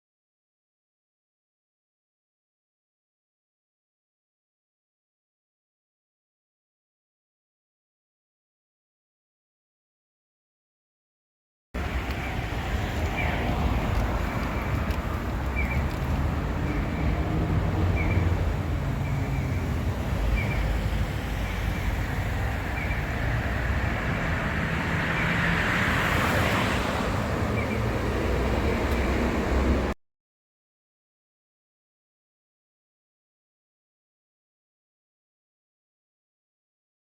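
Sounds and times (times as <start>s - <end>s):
vehicle rumble in motion: 11.8s - 30.0s.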